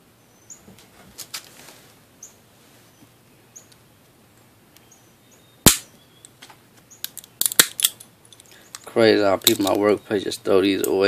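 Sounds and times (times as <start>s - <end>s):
sharp snap: 5.6s - 6.0s.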